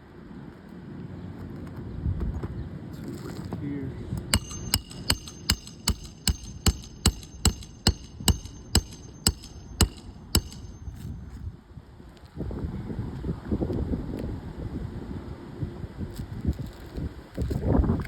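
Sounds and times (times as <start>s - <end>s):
hammer striking metal: 4.3s - 11.2s.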